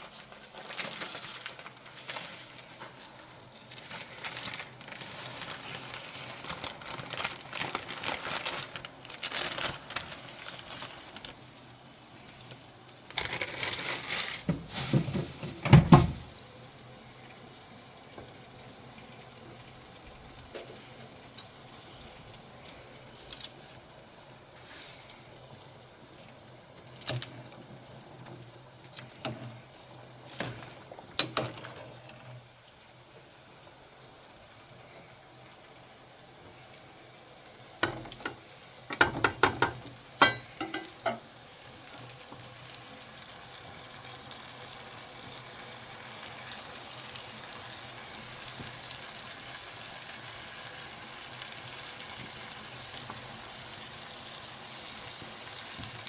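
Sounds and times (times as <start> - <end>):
frying sizzle: 0.0 - 56.0
cookware knocks and clinks: 38.9 - 41.2.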